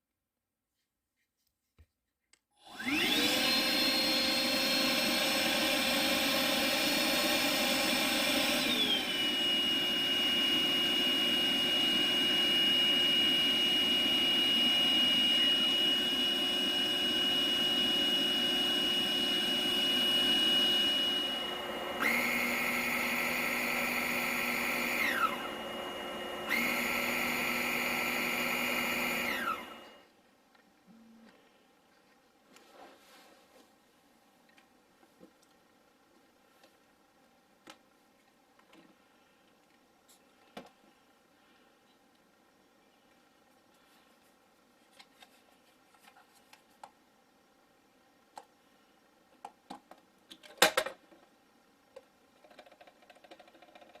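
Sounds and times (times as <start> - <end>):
vacuum motor whine: 2.6 - 30.1.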